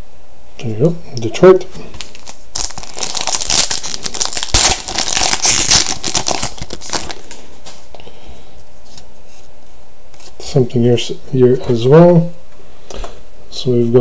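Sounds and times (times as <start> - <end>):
foil wrapper crinkling and tearing: 1.9 - 7.8.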